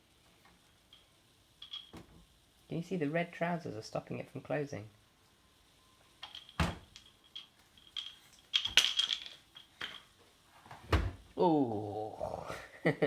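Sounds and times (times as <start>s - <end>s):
knocks and rattles: 6.2s - 10.1s
washing machine door thud: 6.6s - 6.8s, 10.8s - 11.2s.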